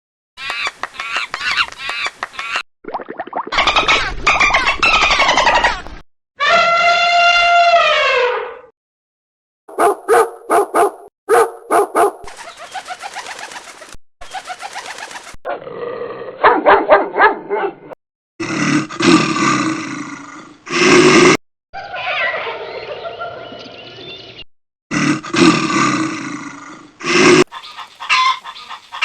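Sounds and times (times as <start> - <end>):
rapid pulsing animal calls: 27.5 - 29.0.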